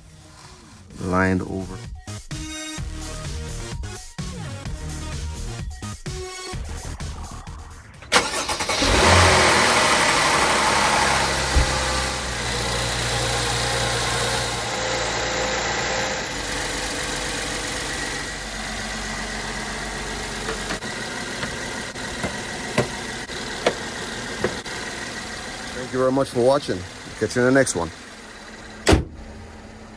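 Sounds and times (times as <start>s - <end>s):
car engine starting and idling: 6.5s - 29.9s.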